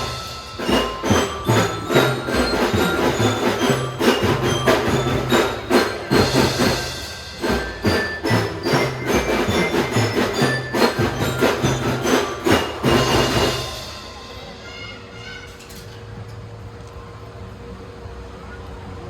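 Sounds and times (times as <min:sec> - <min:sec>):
mallet bells melody: 0:00.0 - 0:14.7
marching drums beating: 0:00.0 - 0:14.9.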